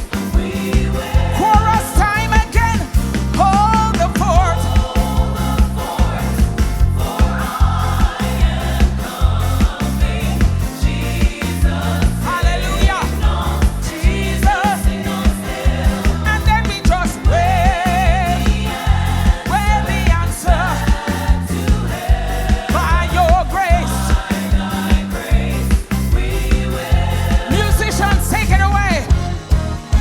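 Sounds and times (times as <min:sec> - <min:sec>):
lead singer with vibrato: 0:00.0 - 0:29.2
backing singers: 0:00.0 - 0:30.0
band with heavy beat: 0:00.0 - 0:30.0.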